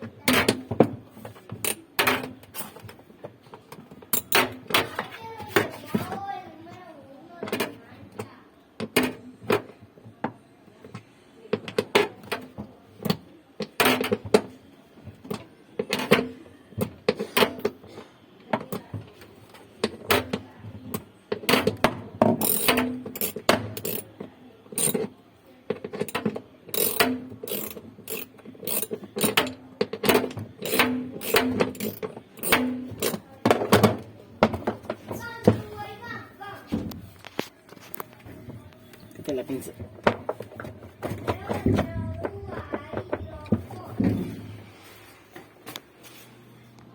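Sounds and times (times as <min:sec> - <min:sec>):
hand tools clattering on metal parts: 0:22.4 - 0:24.1, 0:24.8 - 0:25.1, 0:26.0 - 0:33.8.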